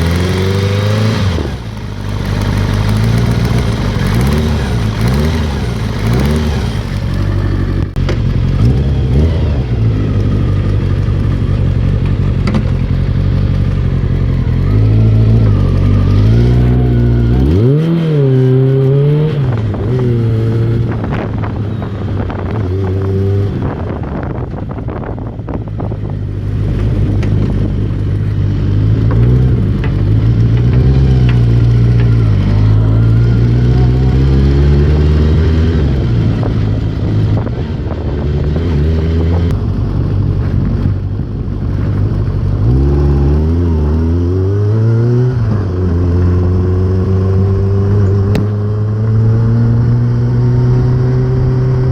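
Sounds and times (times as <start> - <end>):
motorcycle engine idling: 0.0 - 17.7
engine ticking: 0.0 - 17.8, 23.6 - 43.0.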